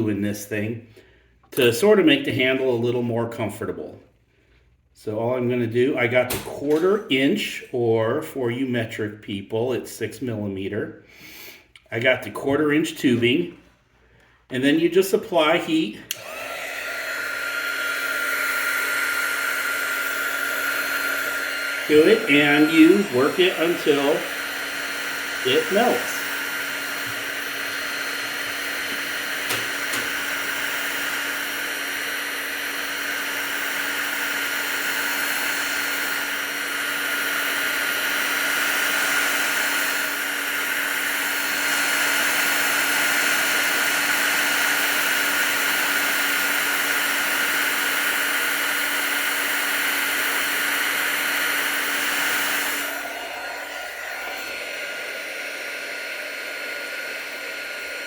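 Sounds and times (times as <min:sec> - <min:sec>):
hot-air blower whining: 0:14.0 - 0:58.0.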